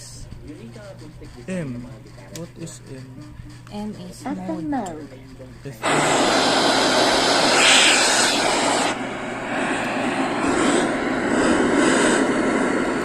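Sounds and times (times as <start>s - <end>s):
radio static hiss: 5.8s - 13.0s.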